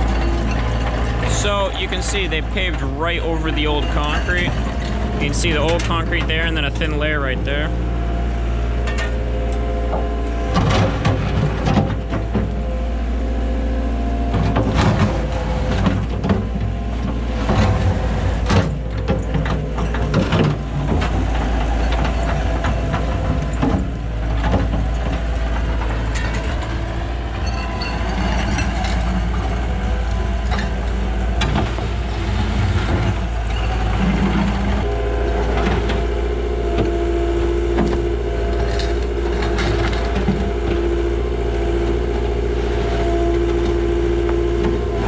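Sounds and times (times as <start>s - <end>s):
excavator diesel engine running: 0.0s - 45.0s.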